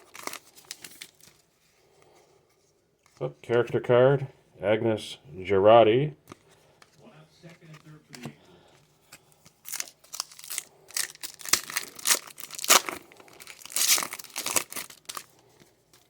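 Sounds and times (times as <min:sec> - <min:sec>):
wrapper crackling: 0:00.0 - 0:01.5, 0:09.6 - 0:15.5.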